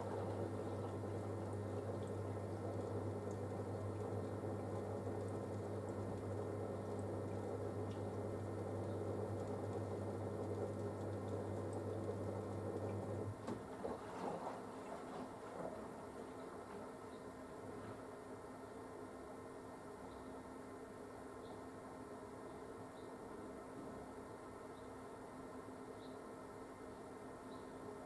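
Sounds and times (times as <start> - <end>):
water running in washing machine: 0.0 - 18.2
mains hum: 0.0 - 28.0
water trickling and sloshing: 9.4 - 18.1.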